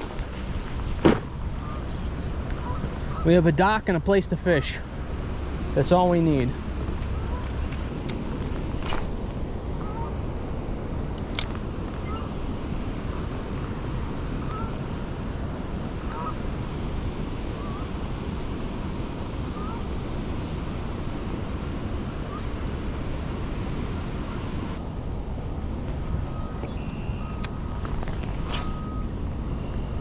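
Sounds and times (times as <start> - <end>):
wind on microphone: 0.0 - 3.2, 4.9 - 30.0
creek rushing: 2.3 - 16.7
faint steady tone: 25.2 - 30.0
faint short chirps: 26.5 - 30.0.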